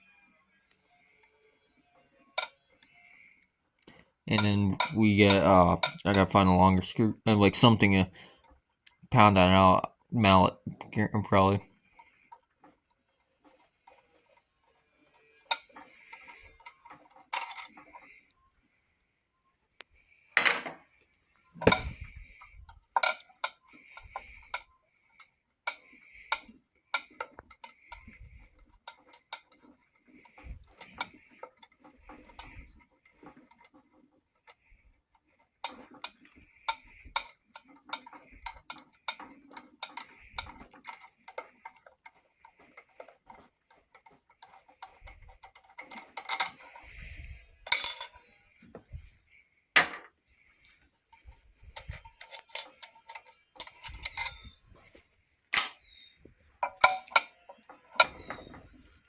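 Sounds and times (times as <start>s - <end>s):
hand tools clicking on metal: 4.3s - 6.6s, 15.5s - 17.9s, 21.6s - 33.7s, 35.2s - 46.9s, 47.7s - 48.2s, 51.1s - 54.6s, 55.6s - 58.9s.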